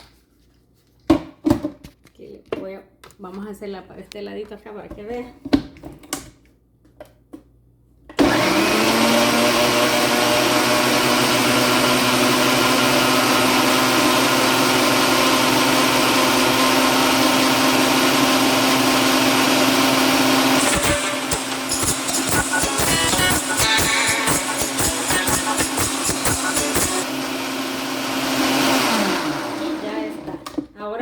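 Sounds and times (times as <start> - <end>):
blender motor whine: 8.2 - 30.6.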